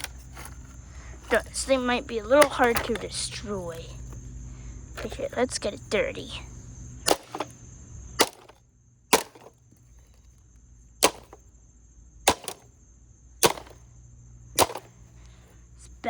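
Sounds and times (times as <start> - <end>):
board striking robot vacuum: 2.4 - 3.1, 7.1 - 7.5, 8.2 - 8.6, 9.2 - 9.6, 11.0 - 11.4, 12.3 - 12.7, 13.4 - 13.8, 14.6 - 14.9.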